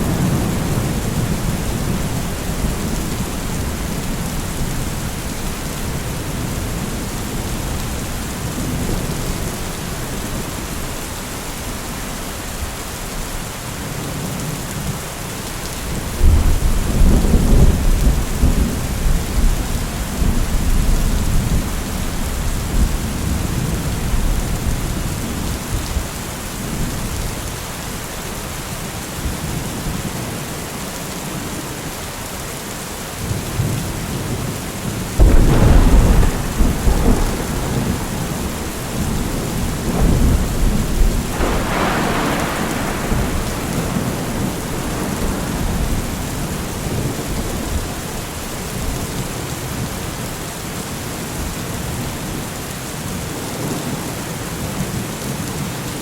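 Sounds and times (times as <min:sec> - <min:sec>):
thunder rumbling: 0:00.0 - 0:11.2, 0:35.2 - 0:49.3
steady rain falling: 0:00.0 - 0:56.0.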